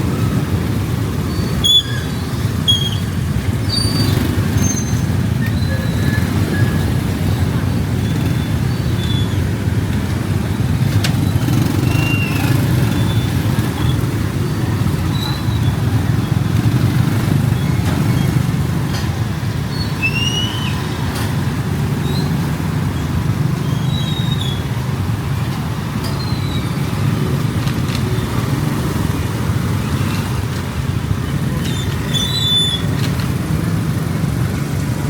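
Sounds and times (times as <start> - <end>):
road traffic rumble: 0.0 - 35.0.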